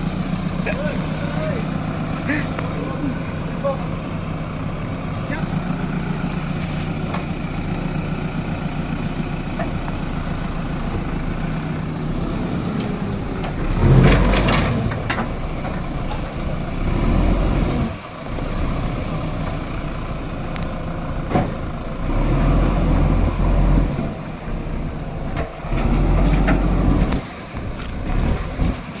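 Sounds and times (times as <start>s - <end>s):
diesel engine revving under load: 0.0s - 29.0s.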